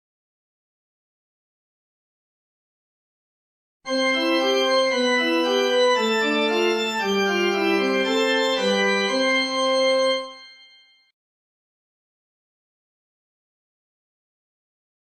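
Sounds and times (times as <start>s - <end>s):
train chime melody: 3.9s - 11.1s.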